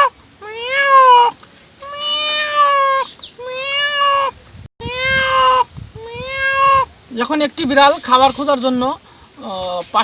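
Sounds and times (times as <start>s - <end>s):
man imitating cat meows: 0.0s - 6.9s.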